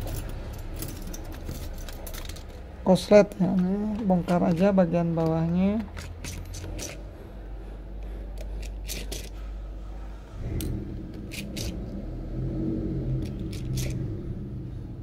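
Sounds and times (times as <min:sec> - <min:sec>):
tools clicking and scraping on phone: 0:03.3 - 0:07.2, 0:08.0 - 0:09.6, 0:10.6 - 0:11.8, 0:13.2 - 0:14.0
low hum: 0:06.7 - 0:15.0.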